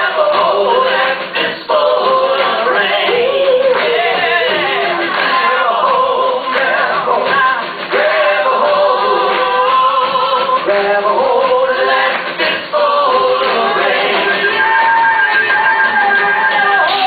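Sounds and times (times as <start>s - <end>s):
people singing: 0.0s - 17.0s.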